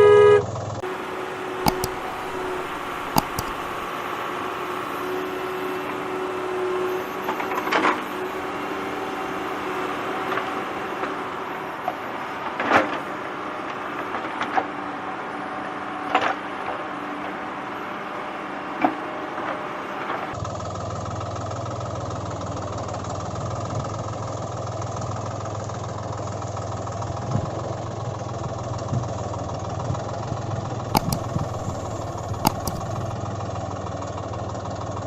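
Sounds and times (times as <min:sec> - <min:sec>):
faint hum: 0:00.9 - 0:04.2
sharp clicks: 0:01.6 - 0:03.9, 0:30.9 - 0:33.0
small electric motor whirring: 0:01.6 - 0:03.9.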